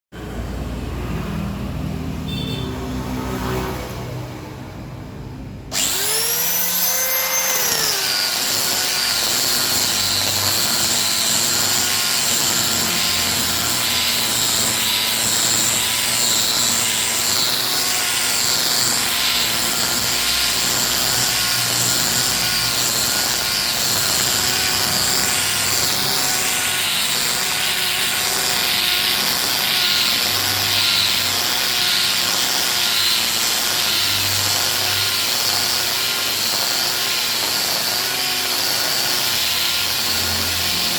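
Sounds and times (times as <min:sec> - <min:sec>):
angle grinder motor whine: 0:02.3 - 0:02.8, 0:05.7 - 0:40.9
sanding disc rasping on wood: 0:05.7 - 0:40.9.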